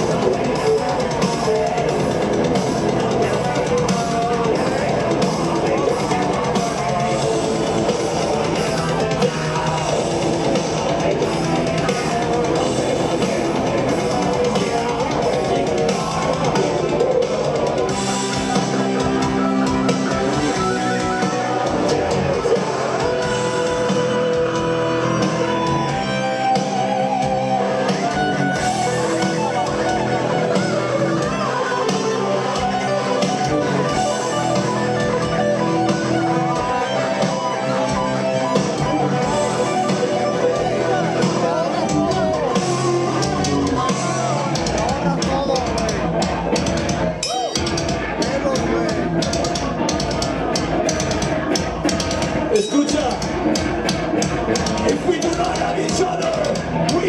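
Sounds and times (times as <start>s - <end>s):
drum kit: 0.0s - 57.0s
guitars: 0.0s - 57.0s
live rock band playing: 0.0s - 57.0s.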